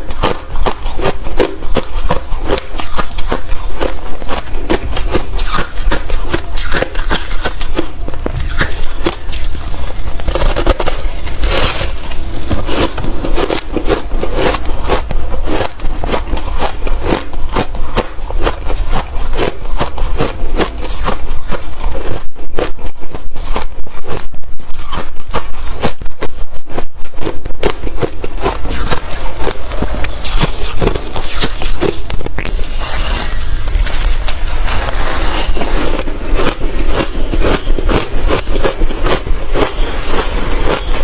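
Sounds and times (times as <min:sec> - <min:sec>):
ice being chewed: 0:00.0 - 0:41.0.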